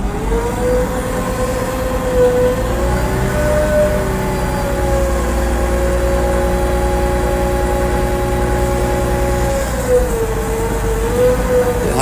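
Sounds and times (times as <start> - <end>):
bulldozer engine rumble: 0.0 - 12.0.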